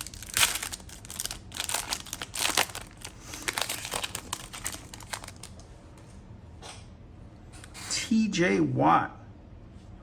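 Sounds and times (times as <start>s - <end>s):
wrapper crinkling and tearing: 0.0s - 5.6s.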